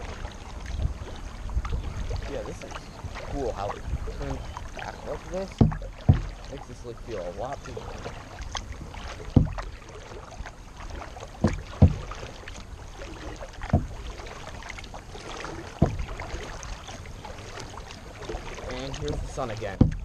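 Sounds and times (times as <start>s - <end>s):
wind rumble on microphone: 0.0s - 9.8s, 18.6s - 20.0s
paddle splashing in water: 0.0s - 20.0s.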